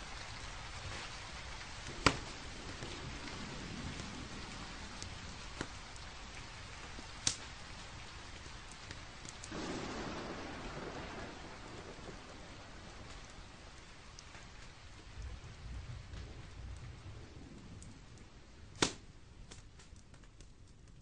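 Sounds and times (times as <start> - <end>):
rumble: 0.0 - 21.0
steady rain falling: 0.0 - 21.0
sharp pops: 2.0 - 2.3, 7.2 - 7.5, 18.7 - 20.5.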